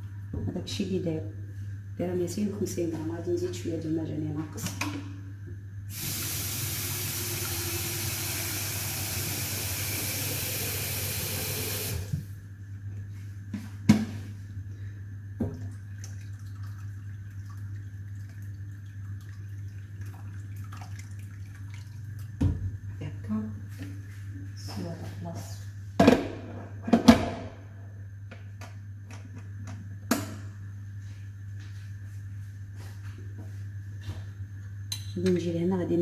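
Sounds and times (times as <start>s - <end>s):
steady low hum: 0.0s - 36.0s
tap water running into a pot: 5.9s - 12.2s, 15.5s - 22.5s.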